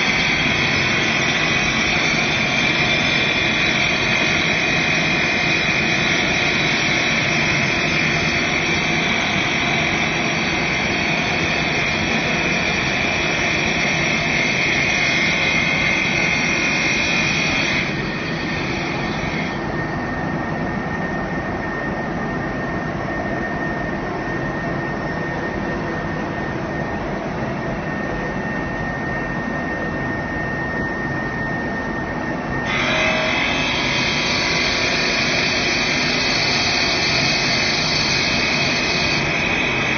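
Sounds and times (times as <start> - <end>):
cutting machine mechanical drone: 0.0 - 20.4, 32.6 - 39.9
cutting machine high-pitched whine: 0.0 - 39.9.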